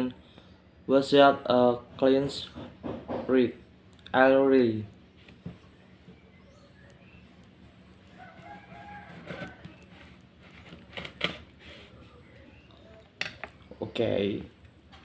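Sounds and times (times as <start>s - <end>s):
rooster crowing: 8.0s - 10.2s.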